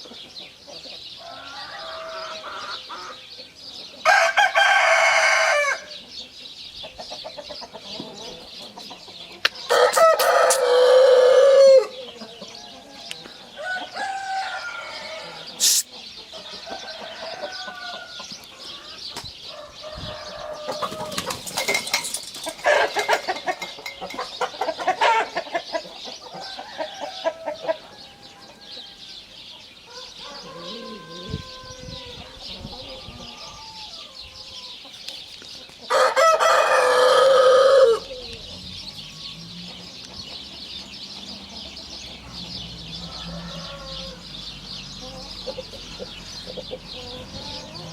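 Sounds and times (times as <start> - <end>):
chickens clucking: 0.0 - 47.9
rooster crowing: 1.2 - 3.2, 4.0 - 5.9, 9.7 - 15.7, 16.4 - 21.4, 29.9 - 34.6, 35.9 - 38.6, 42.8 - 47.9.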